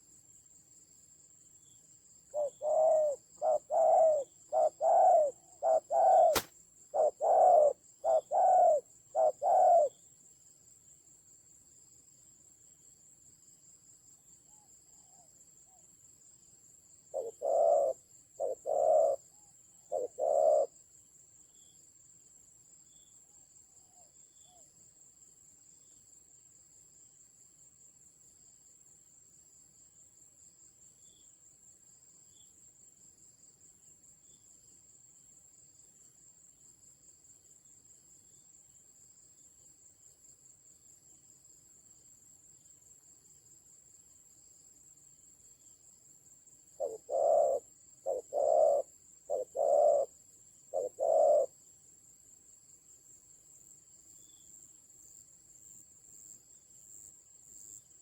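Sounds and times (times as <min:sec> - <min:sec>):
high-pitched insect trill: 0:00.0 - 0:58.0
dove cooing: 0:02.3 - 0:10.0, 0:17.1 - 0:19.2, 0:19.8 - 0:20.8, 0:46.8 - 0:51.5.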